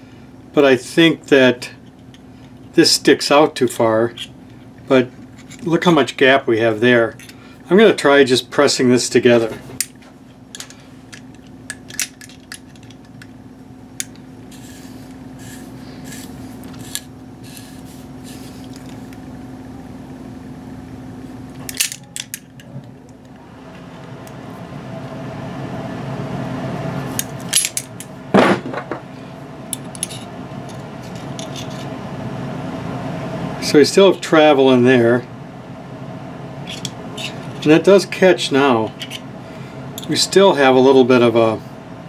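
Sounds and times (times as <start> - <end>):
steady low hum: 0.0 - 42.0
small metal parts clinking: 21.7 - 22.7.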